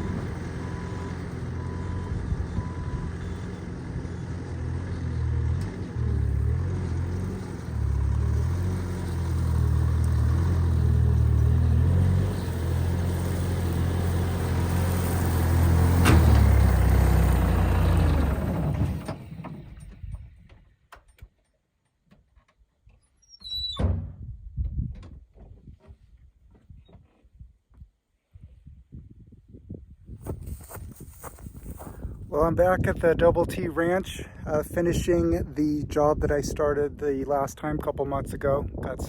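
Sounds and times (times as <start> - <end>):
vehicle engine running: 0.0 - 20.2
short squeak: 23.0 - 24.0.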